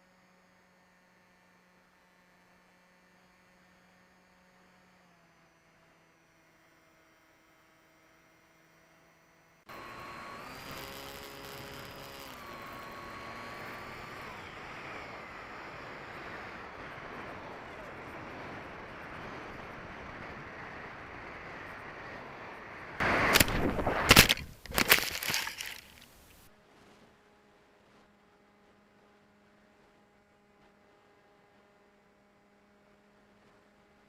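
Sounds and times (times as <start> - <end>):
electric motor whine: 0.1 - 26.1
plane hitting the ground: 14.6 - 26.3
air rushing: 23.0 - 24.9.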